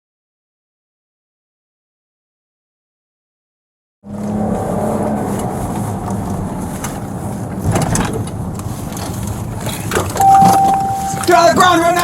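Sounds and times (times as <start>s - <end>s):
car engine and road noise: 4.0s - 12.0s.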